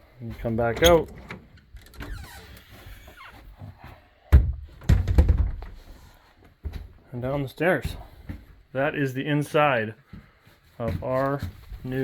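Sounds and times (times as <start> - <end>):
footsteps on hollow floor: 2.7 - 8.7, 9.9 - 12.0.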